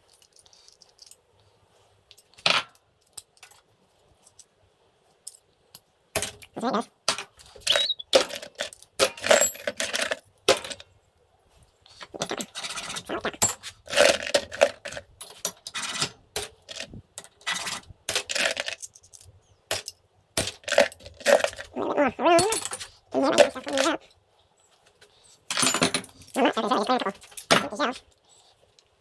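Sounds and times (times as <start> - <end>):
scrap metal clinking: 12.0 - 21.7, 22.4 - 23.9, 25.4 - 26.4.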